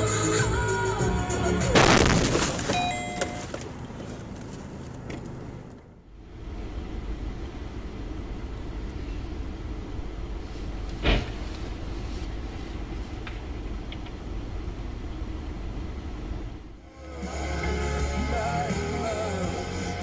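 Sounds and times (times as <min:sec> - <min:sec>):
car road and engine noise: 0:00.0 - 0:20.0
sharp bang: 0:01.8 - 0:02.9.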